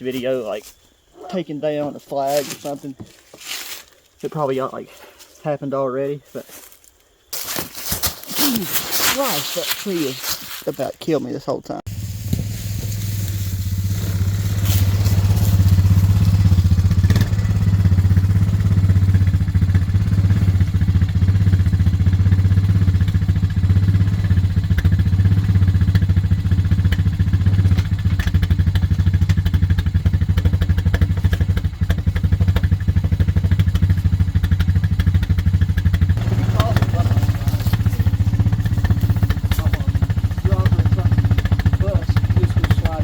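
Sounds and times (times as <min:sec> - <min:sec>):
e-bike motor and tyres drone: 0:11.9 - 0:43.0.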